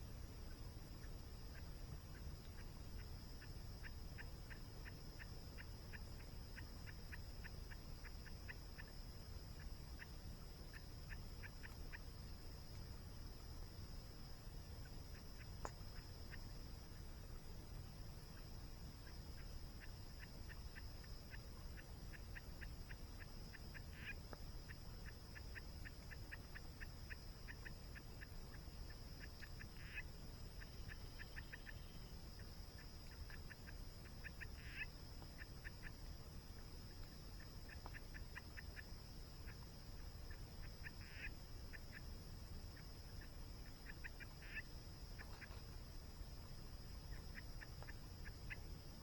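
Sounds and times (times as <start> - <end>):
small animal chirping: 33.3 - 34.9.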